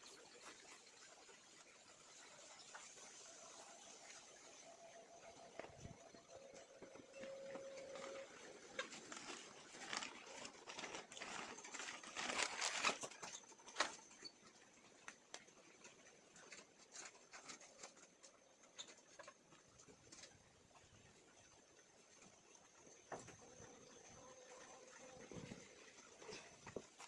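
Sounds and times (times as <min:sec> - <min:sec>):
chickens scratching and pecking: 0:00.0 - 0:27.0.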